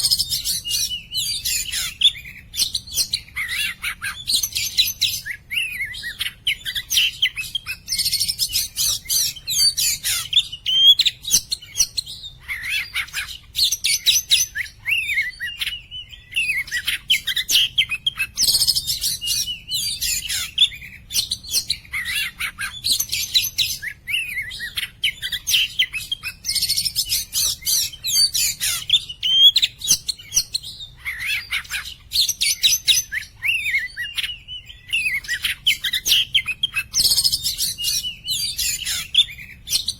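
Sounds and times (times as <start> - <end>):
birds singing whistles and chatter: 0.0 - 39.9.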